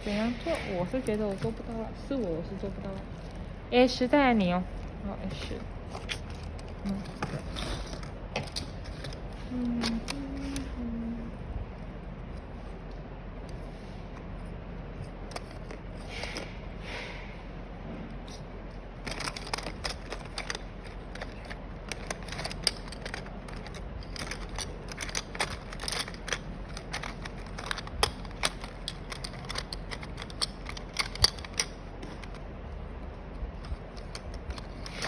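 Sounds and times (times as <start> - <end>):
packaging crinkling: 18.4 - 35.0
sharp clicks of small parts: 19.0 - 32.6, 33.4 - 35.0.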